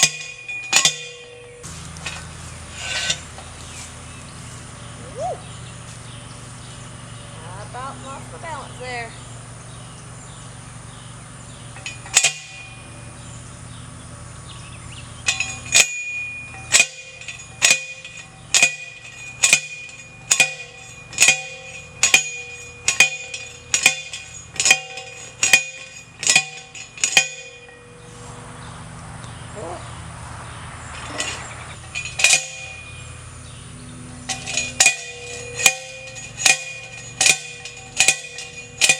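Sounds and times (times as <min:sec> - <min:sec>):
hammer blows on metal: 0:00.0 - 0:01.7, 0:11.7 - 0:13.2, 0:15.2 - 0:28.1, 0:31.1 - 0:33.2, 0:34.2 - 0:38.9.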